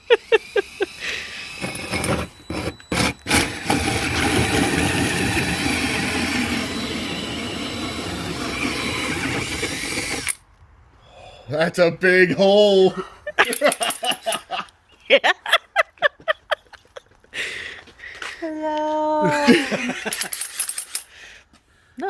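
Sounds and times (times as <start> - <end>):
power drill cutting with hole saw: 0.0 - 10.4.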